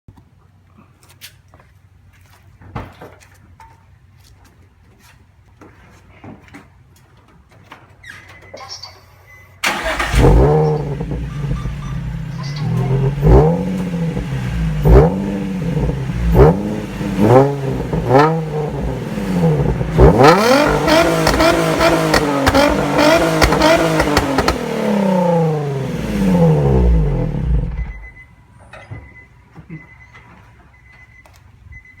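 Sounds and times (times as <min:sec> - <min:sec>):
car engine revving: 0:09.6 - 0:28.1.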